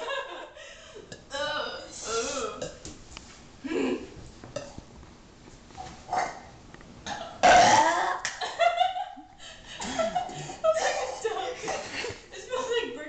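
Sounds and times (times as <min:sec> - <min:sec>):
person burping: 0:07.1 - 0:08.2.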